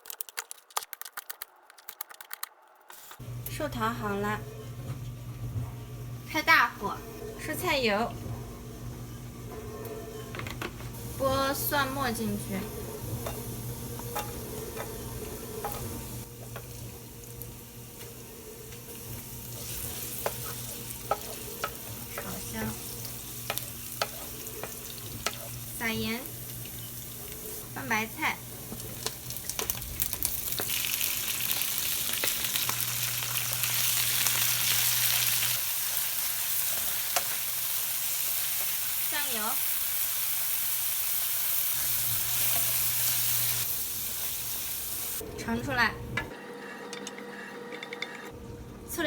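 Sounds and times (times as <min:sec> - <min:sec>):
clicks and scrapes of tossing: 0:00.0 - 0:02.6
garlic sizzling in oil: 0:10.9 - 0:45.2.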